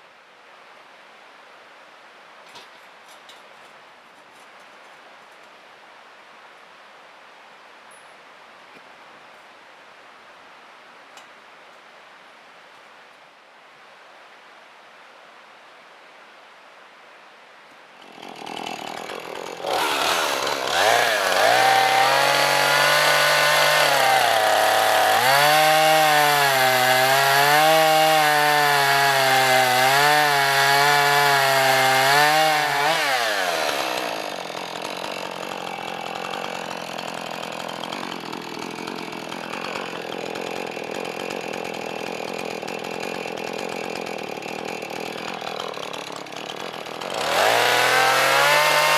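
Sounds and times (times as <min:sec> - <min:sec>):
quiet steady noise: 0:00.0 - 0:19.6
small engine revving: 0:18.4 - 0:40.5, 0:45.4 - 0:48.9.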